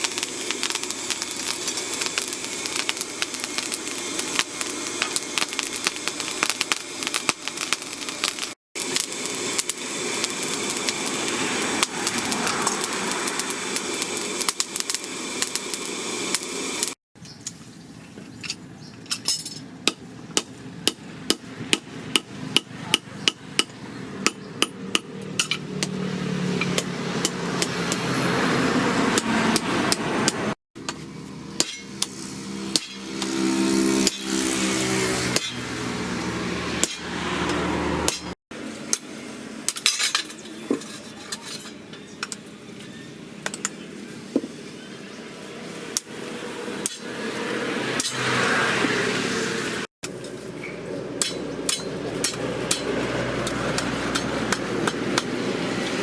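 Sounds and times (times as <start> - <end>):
hammer striking steel: 19.1 - 28.1, 29.1 - 35.9, 36.8 - 39.1, 46.8 - 47.2, 48.0 - 48.4, 51.2 - 55.4.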